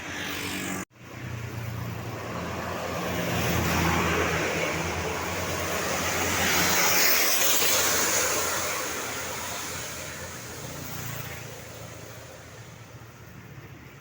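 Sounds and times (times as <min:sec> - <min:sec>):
vehicle passing by: 0:00.0 - 0:13.1.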